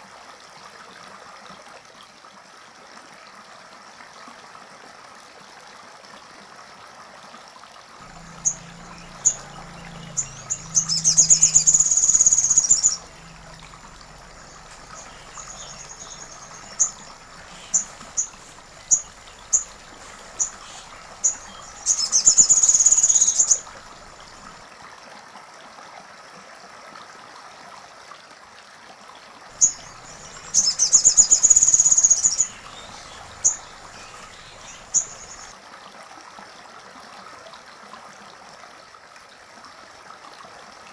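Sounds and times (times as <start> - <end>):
bird chirping: 8.0 - 24.6, 29.6 - 35.5
bird rapid trilling bursts: 8.0 - 24.6, 29.6 - 35.5
running water: 8.0 - 24.7, 29.5 - 35.6.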